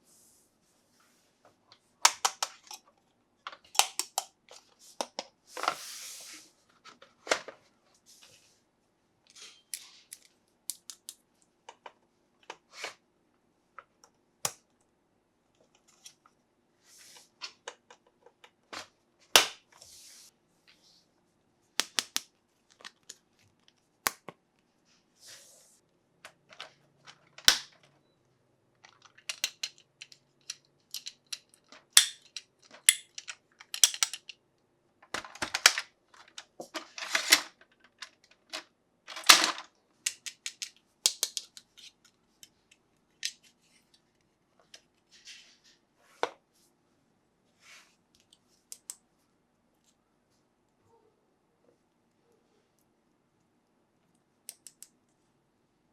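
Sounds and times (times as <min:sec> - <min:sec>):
plastic toy parts clicking: 0:02.1 - 0:02.8, 0:03.5 - 0:04.3, 0:09.7 - 0:11.2, 0:21.8 - 0:23.2, 0:28.9 - 0:34.4, 0:37.0 - 0:42.6.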